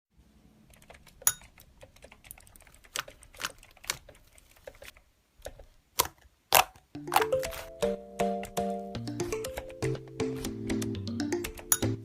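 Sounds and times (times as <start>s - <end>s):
slime squishing with clicks and pops: 2.8s - 7.8s.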